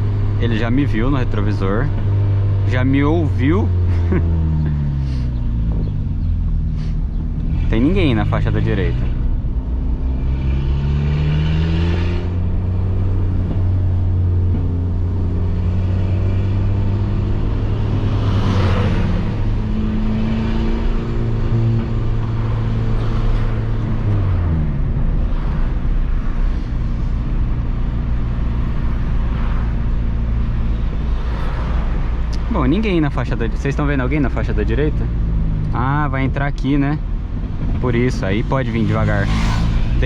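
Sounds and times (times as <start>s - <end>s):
car engine through straight-pipe exhaust: 0.0s - 40.0s.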